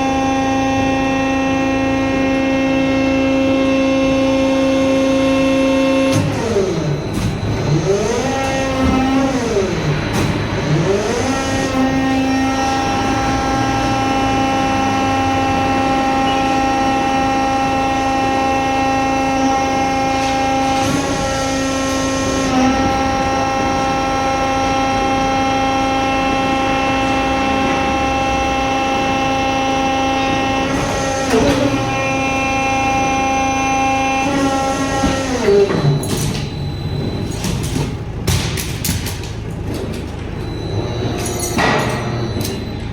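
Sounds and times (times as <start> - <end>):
hydraulic pump whining: 0.0 - 42.9.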